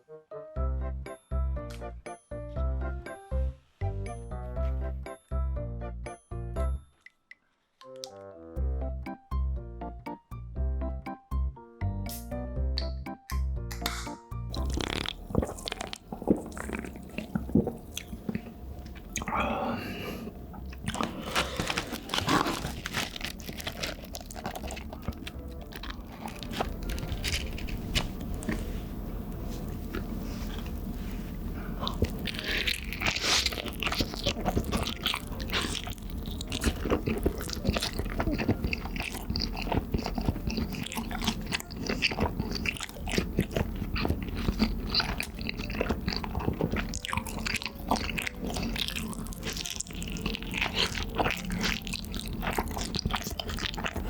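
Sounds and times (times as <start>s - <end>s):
mouth clicks and smacks: 13.8s - 19.4s
chewing food: 14.5s - 54.0s.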